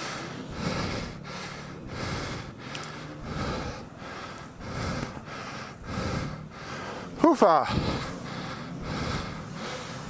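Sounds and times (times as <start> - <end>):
person panting heavily: 0.0 - 10.0.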